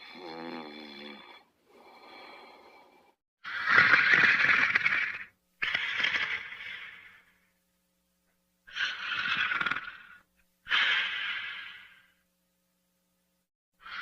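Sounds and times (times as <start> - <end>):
loud breathy snores: 0.0 - 3.6, 8.7 - 12.2.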